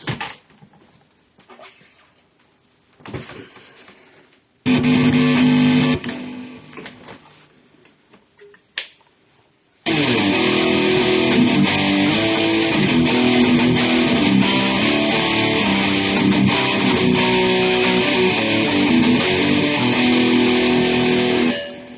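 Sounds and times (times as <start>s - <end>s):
electric guitar through amplifier: 4.6s - 7.1s, 9.8s - 21.9s.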